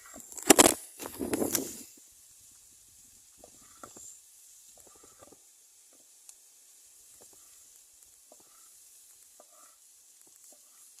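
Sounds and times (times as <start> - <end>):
faint sizzling in a pan: 0.0 - 11.0.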